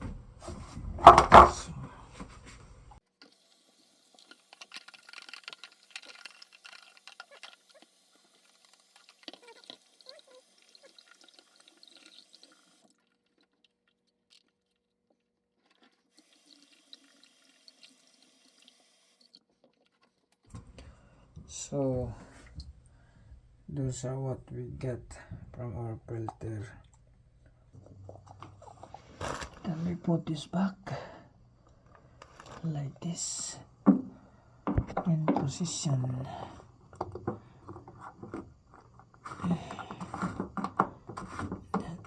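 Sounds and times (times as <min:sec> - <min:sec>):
water trickling and dripping: 0:03.4 - 0:14.6, 0:15.8 - 0:19.8.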